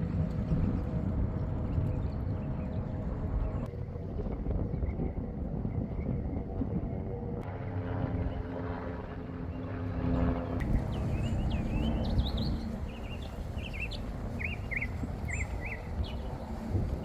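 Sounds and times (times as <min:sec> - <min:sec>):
low outdoor rumble: 0:07.0 - 0:17.0
motor hum: 0:09.7 - 0:17.0
small birds chirping: 0:10.6 - 0:17.0.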